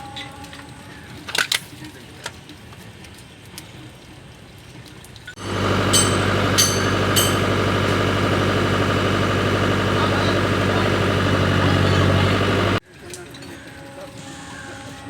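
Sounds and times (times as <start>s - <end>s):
bulldozer diesel engine running: 5.4s - 12.8s.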